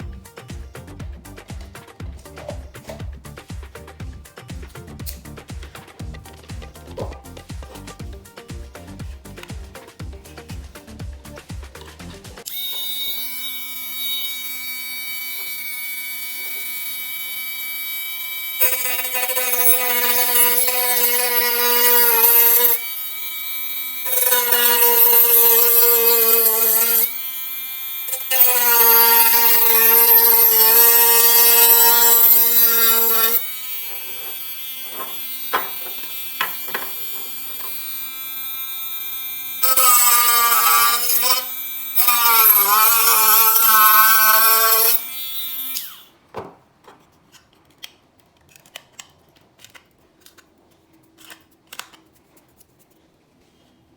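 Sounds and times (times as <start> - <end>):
rotary tool whining: 12.4 - 46.0.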